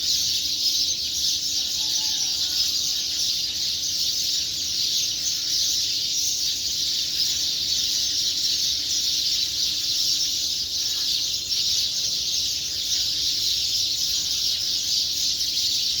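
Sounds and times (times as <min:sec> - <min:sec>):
birds chirping and calling: 0:00.0 - 0:16.0.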